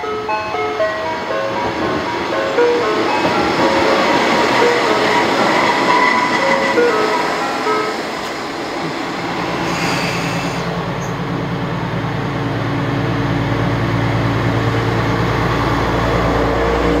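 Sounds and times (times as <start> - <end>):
diesel railcar engine drone: 0.0 - 17.0.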